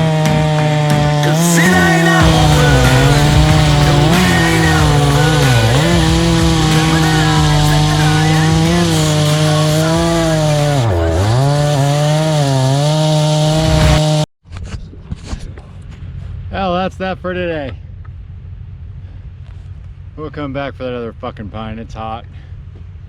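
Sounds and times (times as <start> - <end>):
chainsaw cutting wood: 0.0 - 14.3.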